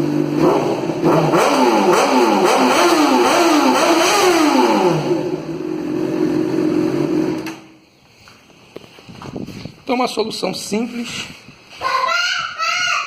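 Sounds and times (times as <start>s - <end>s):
motorcycle engine revving and idling: 0.0s - 7.5s.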